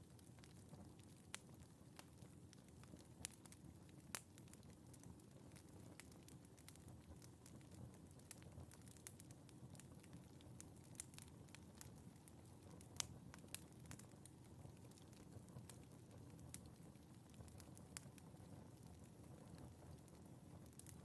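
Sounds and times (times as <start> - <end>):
logs crackling in fireplace: 0.0 - 21.0
rustle of flame: 0.0 - 21.0
sharp pops of fire: 10.0 - 14.1, 14.8 - 21.0.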